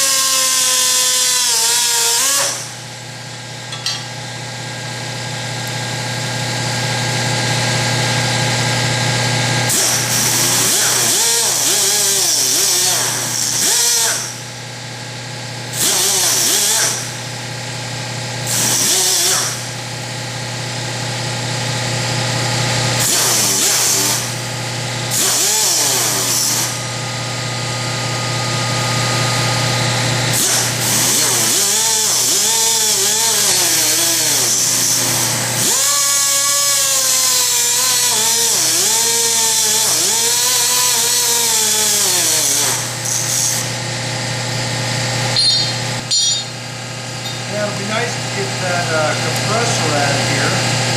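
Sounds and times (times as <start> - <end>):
angle grinder cutting steel: 0.0 - 2.8, 9.6 - 14.5, 15.7 - 17.2, 18.4 - 19.8, 23.0 - 24.5, 25.1 - 26.9, 30.2 - 50.9
air compressor humming: 1.6 - 31.9, 42.6 - 50.9.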